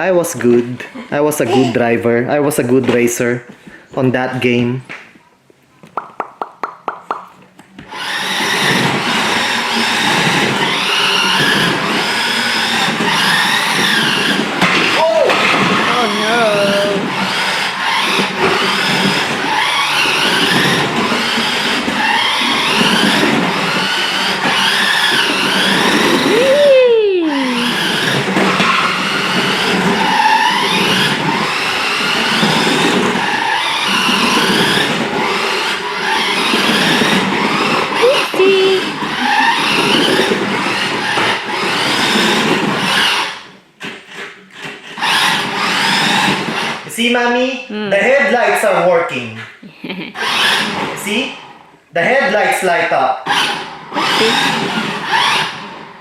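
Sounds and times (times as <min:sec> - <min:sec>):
small electric motor whining: 0:07.8 - 0:43.6, 0:44.6 - 0:46.9, 0:50.2 - 0:51.6, 0:53.2 - 0:56.0
tyres scrubbing: 0:07.9 - 0:26.7, 0:27.3 - 0:46.9.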